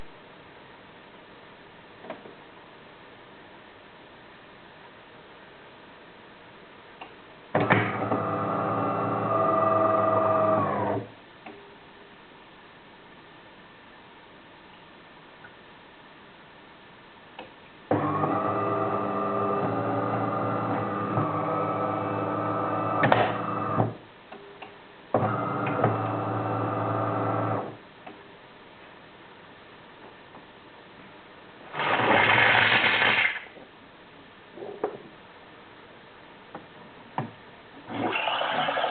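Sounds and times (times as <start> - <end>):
coffee machine pump buzzing: 38.0 - 38.9.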